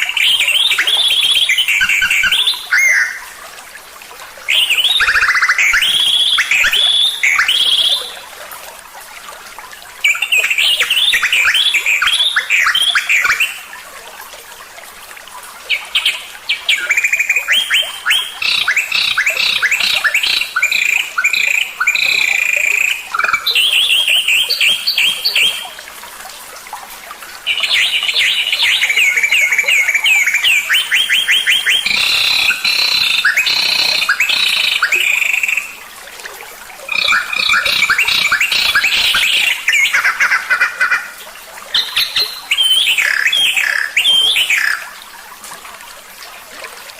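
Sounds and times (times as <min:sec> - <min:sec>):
songbird chirping and trilling: 0:00.1 - 0:03.2, 0:15.7 - 0:25.8, 0:27.5 - 0:35.8, 0:36.9 - 0:41.0, 0:41.8 - 0:44.9.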